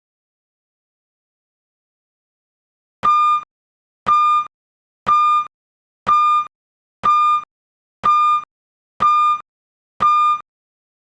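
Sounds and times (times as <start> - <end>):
electronic short beeps: 3.0 - 3.5, 6.1 - 9.4, 10.0 - 10.4.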